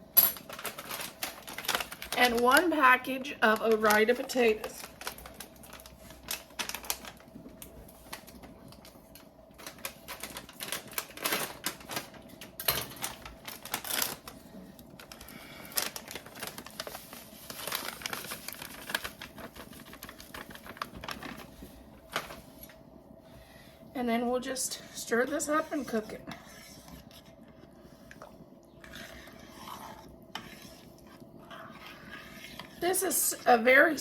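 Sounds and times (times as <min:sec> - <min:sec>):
package crinkling and rattling: 0:00.3 - 0:02.8, 0:03.4 - 0:07.2, 0:09.6 - 0:14.4, 0:15.0 - 0:21.5, 0:22.1 - 0:22.4.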